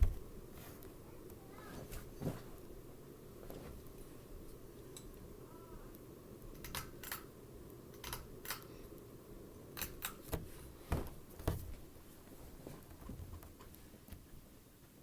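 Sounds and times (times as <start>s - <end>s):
ceiling fan humming: 0.0s - 15.0s
sharp clicks: 5.9s - 9.1s.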